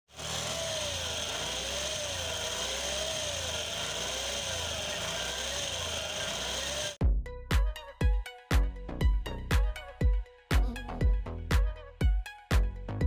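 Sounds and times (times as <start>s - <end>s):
gearbox whine wavering in pitch: 0.1s - 7.0s
scooter running: 0.1s - 7.0s.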